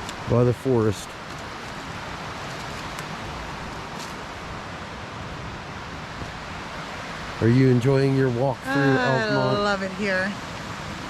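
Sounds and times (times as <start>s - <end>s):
creek white water rushing: 0.0s - 11.0s.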